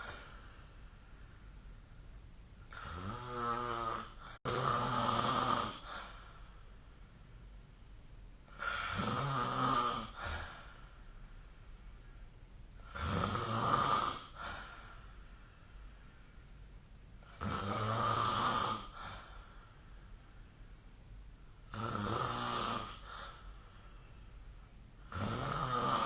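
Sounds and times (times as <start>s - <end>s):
person snoring: 2.7s - 6.1s, 8.5s - 10.8s, 12.8s - 14.6s, 17.3s - 19.3s, 21.7s - 23.4s, 25.0s - 26.0s.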